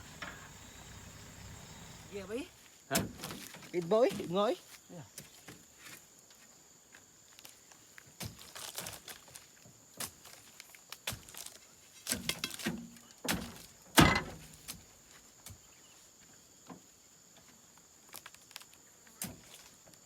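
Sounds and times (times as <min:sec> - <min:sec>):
sharp knocks and thuds: 0:00.0 - 0:02.4.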